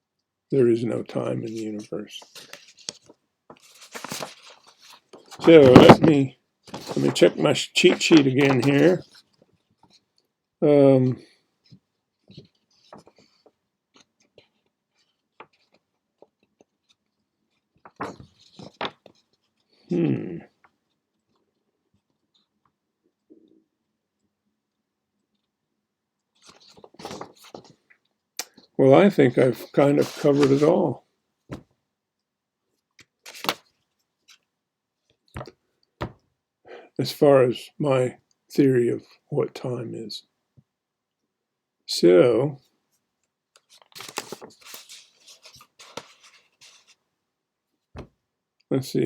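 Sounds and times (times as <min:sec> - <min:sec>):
paper rustling and clicking: 0:02.2 - 0:10.1, 0:11.7 - 0:19.7, 0:26.4 - 0:28.7, 0:29.5 - 0:30.8, 0:33.0 - 0:34.5, 0:43.6 - 0:47.0.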